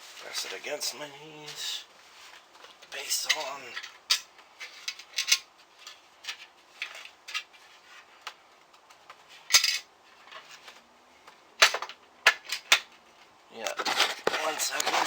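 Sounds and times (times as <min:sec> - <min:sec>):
clicks and clinks of parts: 0:02.8 - 0:07.5, 0:09.5 - 0:10.8.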